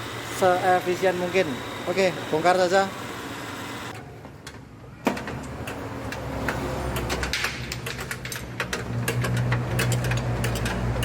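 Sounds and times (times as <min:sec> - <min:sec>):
metal tools clicking and clinking: 0:05.5 - 0:11.0.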